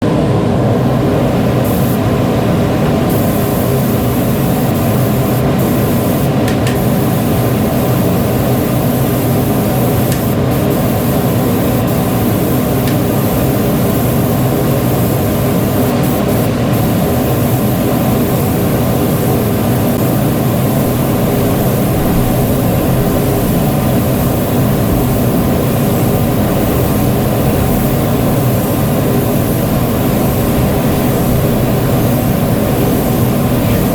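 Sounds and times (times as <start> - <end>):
machine humming with hiss: 0.0 - 33.9.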